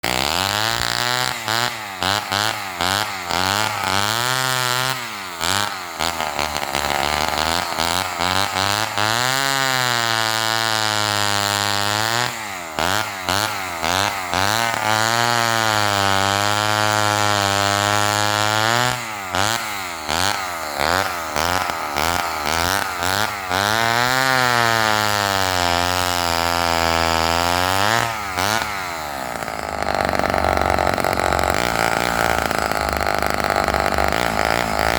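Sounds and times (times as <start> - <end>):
chainsaw revving: 0.0 - 34.9.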